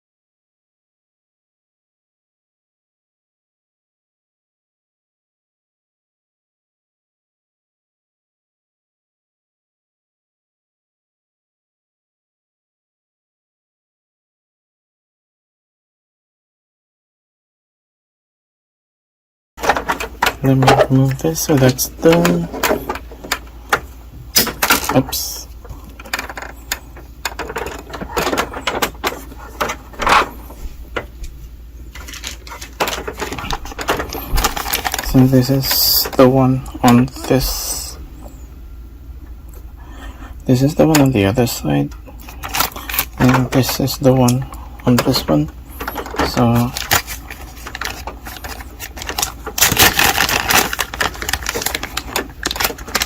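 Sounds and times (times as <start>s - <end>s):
printer parts clicking and knocking: 19.6s - 25.1s, 25.9s - 31.1s, 32.0s - 37.0s, 42.4s - 53.0s.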